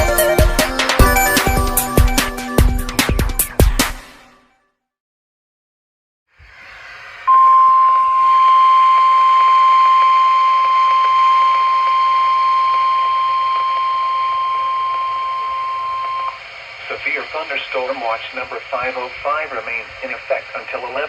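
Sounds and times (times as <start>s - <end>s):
loud steady alarm tone: 0.0s - 3.3s, 7.3s - 16.9s
radio static hiss: 16.2s - 21.0s.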